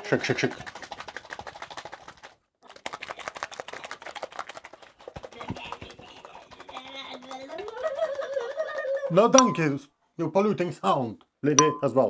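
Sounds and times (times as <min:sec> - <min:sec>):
bottle shaken with rattling contents: 0:00.0 - 0:07.5.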